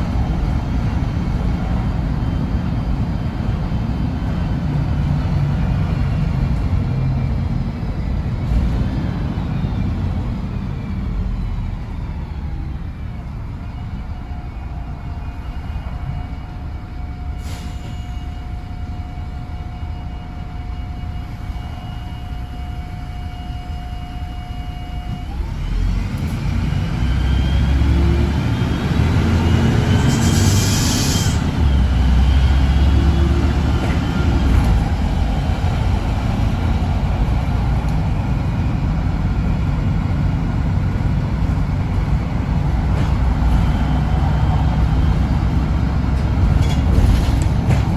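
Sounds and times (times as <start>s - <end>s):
bus diesel engine: 0.0s - 47.9s
air hiss: 30.1s - 31.4s.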